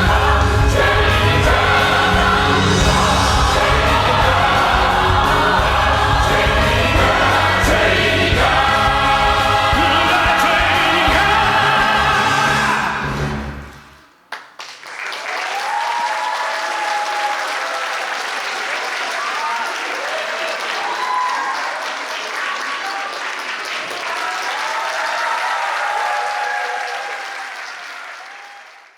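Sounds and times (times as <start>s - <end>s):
audience applauding: 0.0s - 12.8s, 14.3s - 28.9s
choir singing with strong bass: 0.0s - 14.0s.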